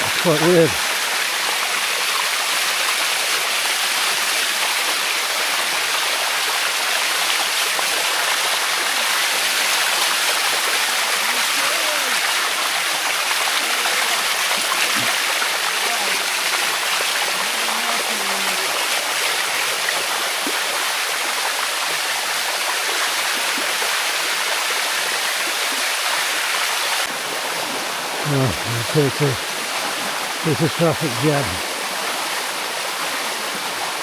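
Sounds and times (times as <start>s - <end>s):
water rushing down a waterfall: 0.0s - 34.0s.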